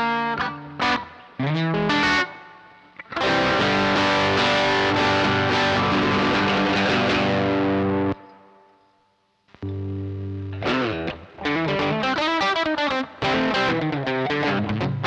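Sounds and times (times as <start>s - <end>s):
electric guitar chord ringing: 0.0s - 8.7s, 9.6s - 15.0s.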